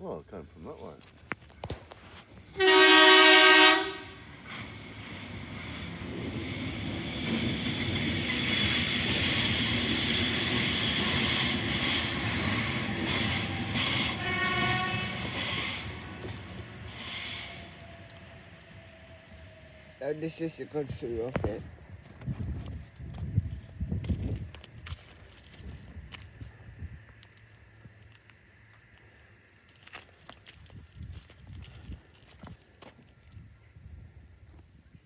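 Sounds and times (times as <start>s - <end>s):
train rumble and wheel noise: 0.0s - 35.0s
train horn blast: 2.5s - 4.3s, 14.0s - 16.0s.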